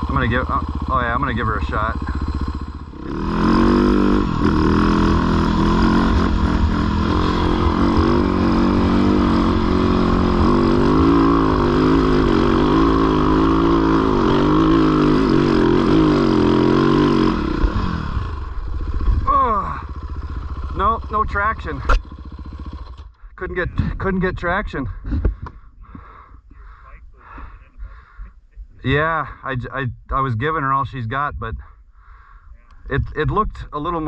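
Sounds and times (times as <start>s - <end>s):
dirt bike engine revving high: 0.0s - 23.0s.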